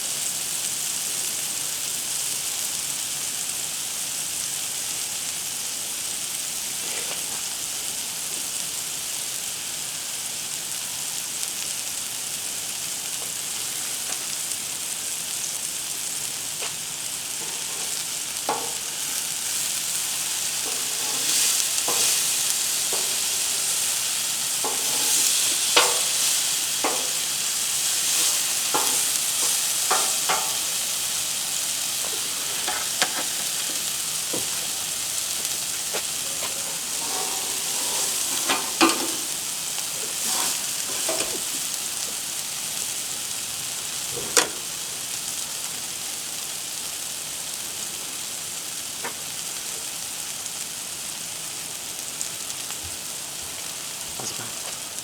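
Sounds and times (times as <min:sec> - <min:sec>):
tomatoes sizzling on a griddle: 0:00.0 - 0:55.0
spatula clicks and scrapes: 0:20.6 - 0:23.9.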